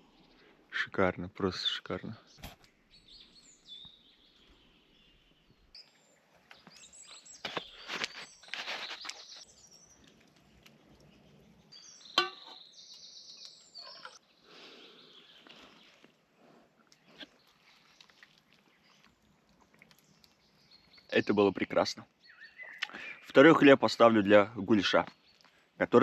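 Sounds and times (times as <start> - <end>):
forest birds singing: 0.0 - 26.0
handling noises: 6.4 - 9.4.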